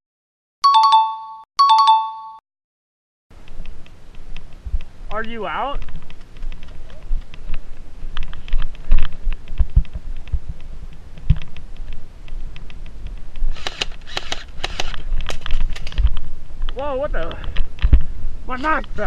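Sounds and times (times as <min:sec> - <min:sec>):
rustling noise: 0:03.4 - 0:13.8
sharp clicks: 0:05.8 - 0:18.0.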